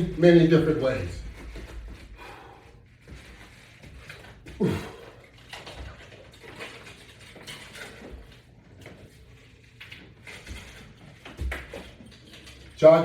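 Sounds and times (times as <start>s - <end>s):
man breathing: 2.0s - 3.1s, 4.5s - 5.3s.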